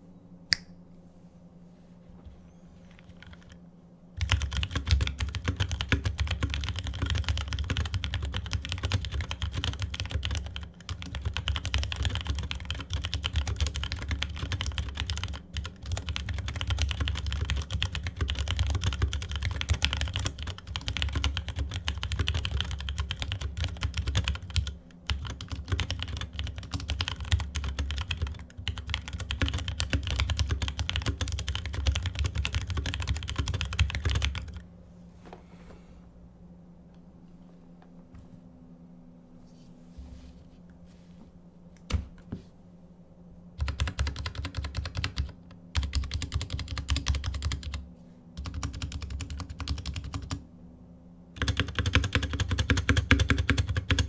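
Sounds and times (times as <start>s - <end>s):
mechanical keyboard typing: 3.1s - 3.6s, 4.2s - 34.6s, 43.6s - 47.8s, 48.4s - 50.4s, 51.4s - 54.0s.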